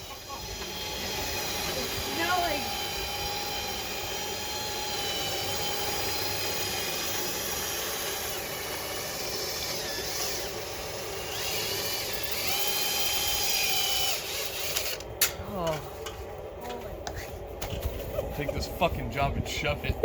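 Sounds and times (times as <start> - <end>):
power drill motor whine: 0.0 - 15.0.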